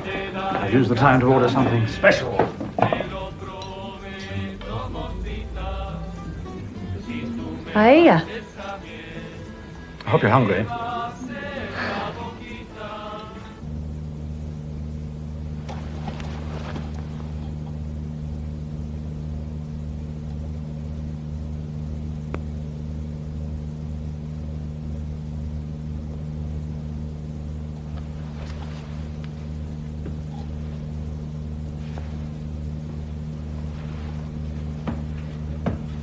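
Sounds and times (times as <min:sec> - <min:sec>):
steady low drone: 0:00.0 - 0:36.0.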